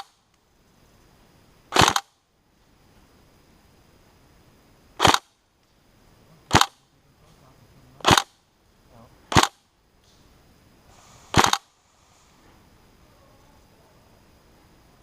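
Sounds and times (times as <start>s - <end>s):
airsoft gun shots: 1.7s - 2.1s, 5.0s - 5.3s, 6.5s - 6.8s, 8.0s - 8.4s, 9.3s - 9.6s, 11.3s - 11.7s.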